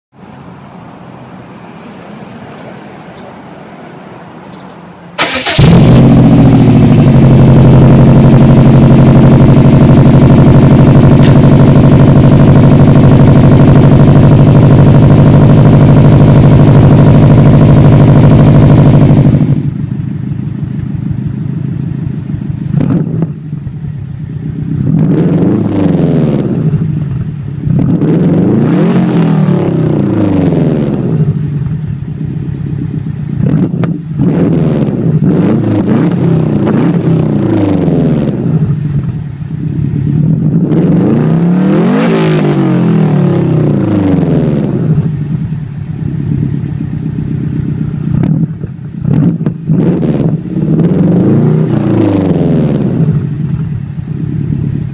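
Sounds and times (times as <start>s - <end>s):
car engine idling: 4.5s - 25.9s, 30.9s - 34.2s, 42.6s - 54.9s
car engine revving: 5.2s - 19.8s, 22.7s - 23.4s, 24.7s - 31.4s, 33.4s - 38.8s, 40.2s - 45.2s, 47.7s - 53.6s.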